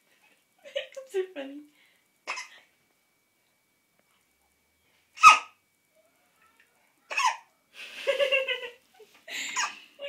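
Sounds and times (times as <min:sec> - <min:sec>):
baby hiccuping: 0:02.3 - 0:02.5.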